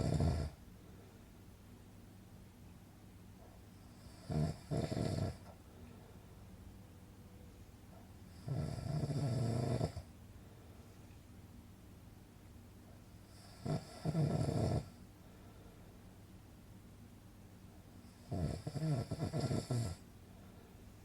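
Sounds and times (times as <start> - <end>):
person snoring: 0.0 - 0.6, 4.0 - 5.5, 8.3 - 10.1, 13.3 - 14.9, 18.2 - 20.0
faint steady hum: 0.0 - 21.0.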